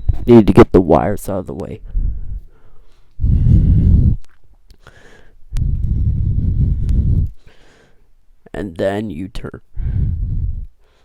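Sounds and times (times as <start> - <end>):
low rumbling blasts on microphone: 1.8 - 2.5, 3.2 - 4.3, 5.5 - 7.4, 9.8 - 10.7.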